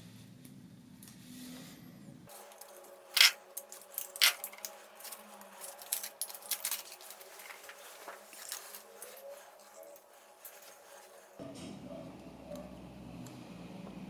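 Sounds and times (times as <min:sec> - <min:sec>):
small hard objects clinking: 0:02.3 - 0:11.4.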